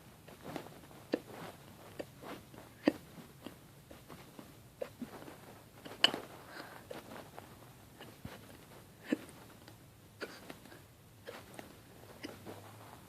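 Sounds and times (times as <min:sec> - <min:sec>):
person hiccuping: 0:09.0 - 0:09.4, 0:10.2 - 0:10.6, 0:12.2 - 0:12.4.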